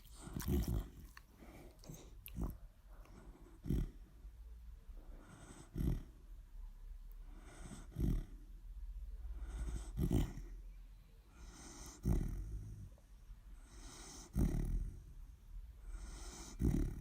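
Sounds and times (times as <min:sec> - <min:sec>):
dog snoring: 0:00.0 - 0:04.2, 0:05.1 - 0:06.2, 0:07.2 - 0:08.6, 0:09.3 - 0:10.6, 0:11.4 - 0:13.0, 0:13.6 - 0:15.2, 0:15.8 - 0:17.0.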